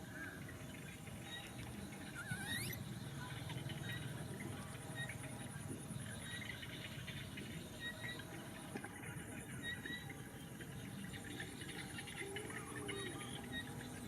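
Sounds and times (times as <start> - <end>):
insect trilling: 1.9 - 4.1.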